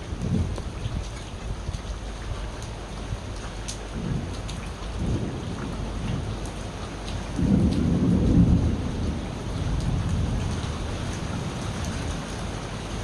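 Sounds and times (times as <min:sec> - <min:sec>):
rolling thunder: 0:00.0 - 0:01.1, 0:04.0 - 0:06.5, 0:07.2 - 0:12.6
rain drop ticks: 0:00.0 - 0:13.0
steady rain: 0:00.0 - 0:13.0.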